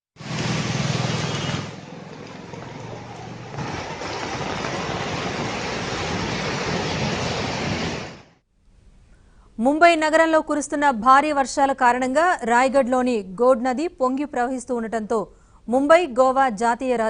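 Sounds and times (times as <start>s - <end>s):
vehicle engine running: 0.2s - 8.0s
steady rushing hiss: 0.2s - 8.4s.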